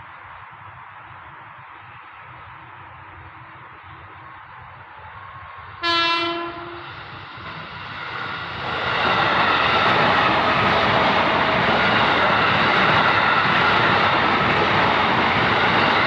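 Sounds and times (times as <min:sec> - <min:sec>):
electric train running: 0:02.0 - 0:16.0
train horn blast: 0:05.8 - 0:06.9.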